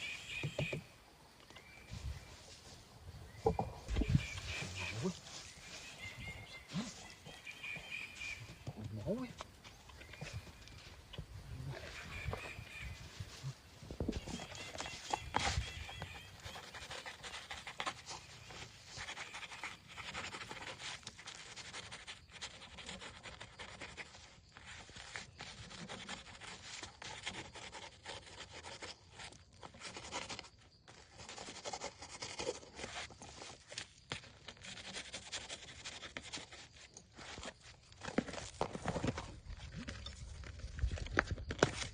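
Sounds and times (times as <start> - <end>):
hands rubbing and scraping materials: 3.4 - 41.9.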